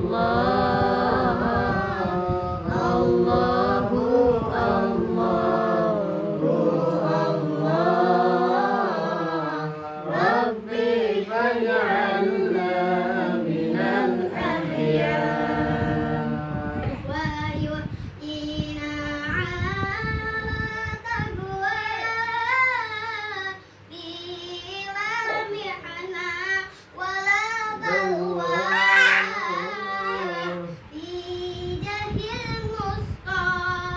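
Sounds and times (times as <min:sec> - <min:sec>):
person singing devotional song: 0:00.0 - 0:25.5.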